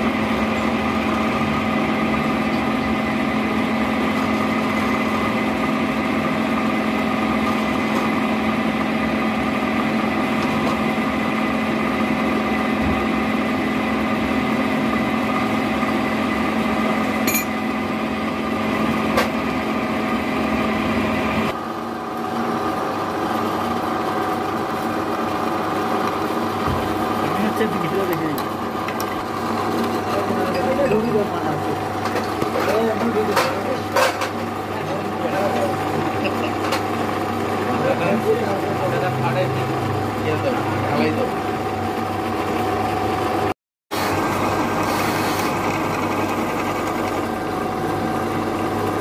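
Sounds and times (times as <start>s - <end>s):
small engine running: 22.2s - 49.0s.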